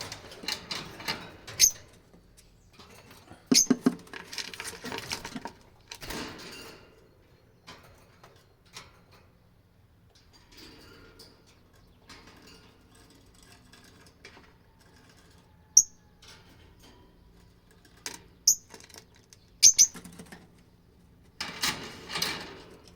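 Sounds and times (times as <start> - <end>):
lovebirds chirping: 2.5 - 3.9, 18.3 - 20.1.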